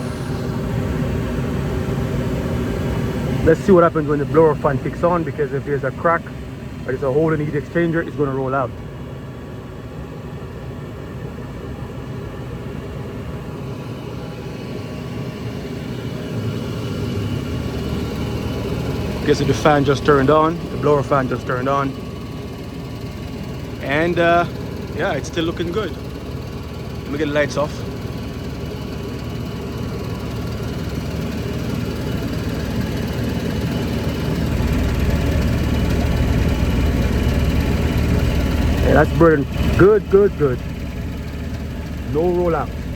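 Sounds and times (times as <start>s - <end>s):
gas furnace rumbling: 0.0s - 42.9s.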